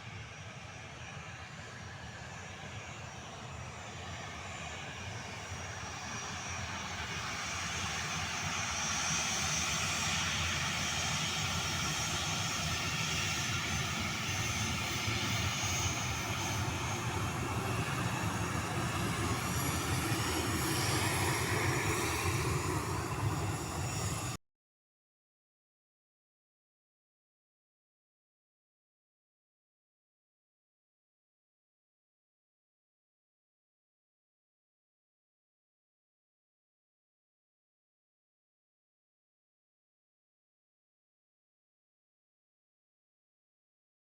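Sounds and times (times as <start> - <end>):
jet engines at takeoff: 0.0 - 24.4.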